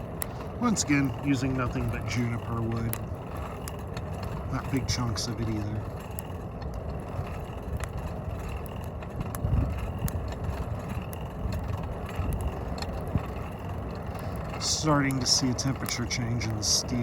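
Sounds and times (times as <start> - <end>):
fire crackling: 0.0 - 17.0
fire low rumble: 0.0 - 17.0.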